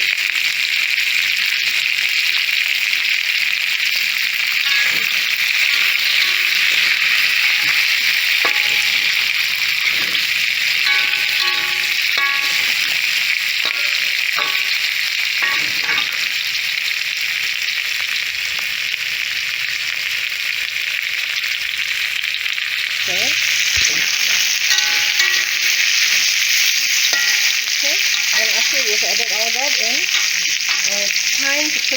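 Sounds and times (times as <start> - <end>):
food sizzling in a frying pan: 0.0 - 31.9
utensil scraping a pan: 4.6 - 16.5, 23.5 - 31.3.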